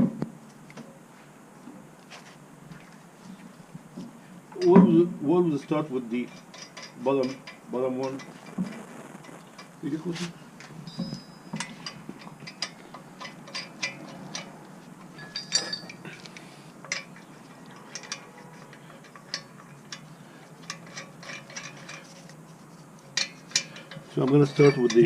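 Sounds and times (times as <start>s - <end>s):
lug nuts and wrench clinking: 6.1s - 8.5s, 10.6s - 25.0s.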